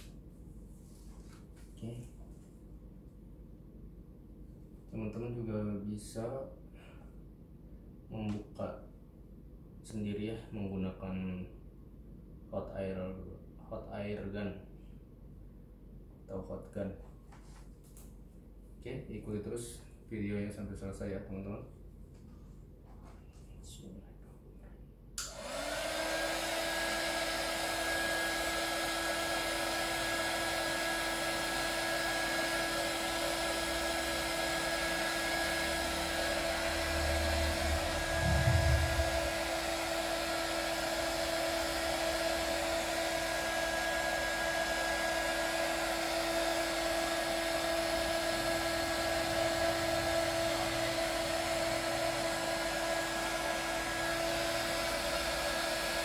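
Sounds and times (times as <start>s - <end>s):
hot air gun fan whine: 25.2s - 56.0s
low rumble: 37.3s - 39.7s.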